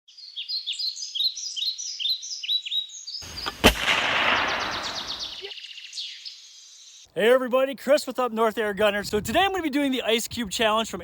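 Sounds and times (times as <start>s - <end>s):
bird chirping: 0.1s - 7.1s
gunshot-like bang: 3.4s - 5.4s.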